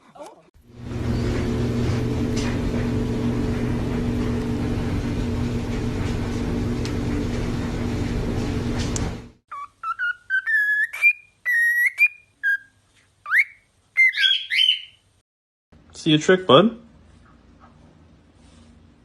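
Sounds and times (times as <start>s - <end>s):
background hum: 0.2s - 14.0s.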